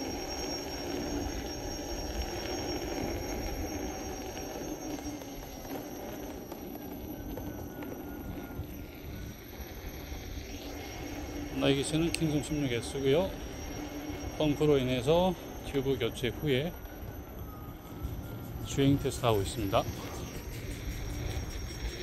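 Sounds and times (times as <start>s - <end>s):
electric motor hum: 0.0s - 22.0s
faint high squeal: 0.0s - 22.0s
low wind rumble: 6.6s - 22.0s.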